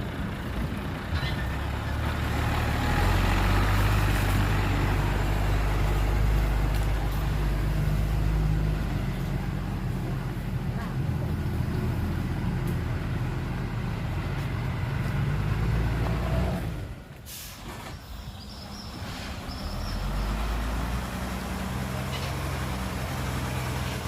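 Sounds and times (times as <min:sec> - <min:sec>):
diesel truck engine: 0:00.0 - 0:24.0
air brake hiss: 0:17.2 - 0:18.2.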